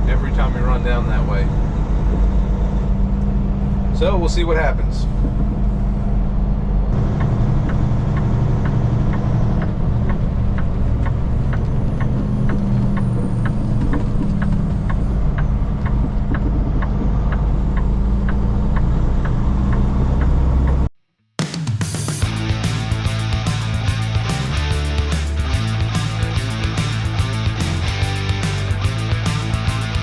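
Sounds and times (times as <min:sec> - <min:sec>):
diesel truck engine running: 0:00.0 - 0:20.9, 0:22.2 - 0:30.0
regular ticking: 0:22.2 - 0:30.0.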